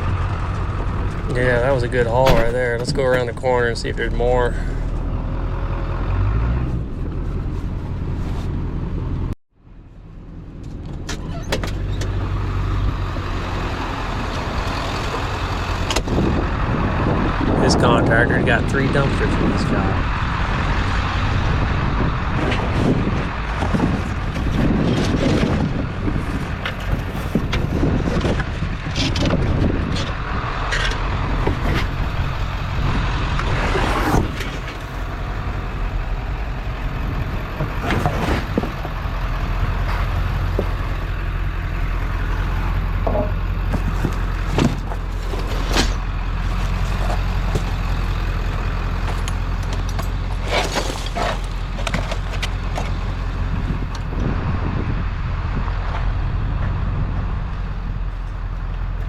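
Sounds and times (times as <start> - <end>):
truck engine running: 0.0 - 59.0
clanks and rattles: 22.2 - 35.5, 36.6 - 54.3.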